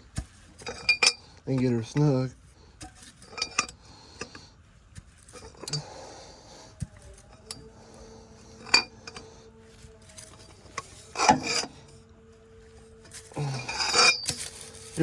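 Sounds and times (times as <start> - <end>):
wrench and socket clinking on metal: 3.3 - 4.4, 8.6 - 9.2, 13.5 - 14.5.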